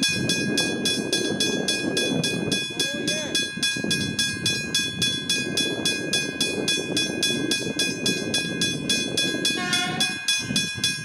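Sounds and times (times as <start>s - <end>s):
level-crossing bell ringing: 0.0s - 11.0s
horn blast: 9.6s - 10.2s.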